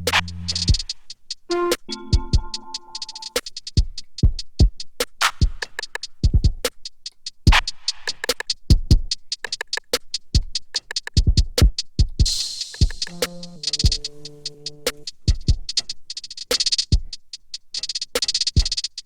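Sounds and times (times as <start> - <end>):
snare hits: 0.0 - 0.8
kick drums: 0.0 - 0.9, 1.9 - 2.7, 6.2 - 6.6, 8.7 - 9.1, 11.2 - 13.2
quick hi-hats: 0.0 - 1.5, 2.4 - 19.0.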